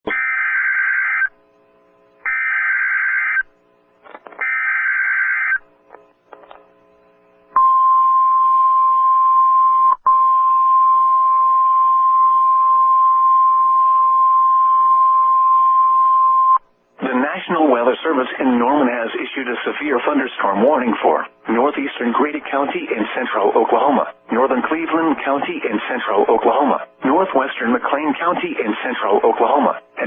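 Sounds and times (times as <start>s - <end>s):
screeching digital data bursts: 0.1s - 1.3s, 2.2s - 3.5s, 4.4s - 5.6s
steady attention tone: 0.1s - 18.9s.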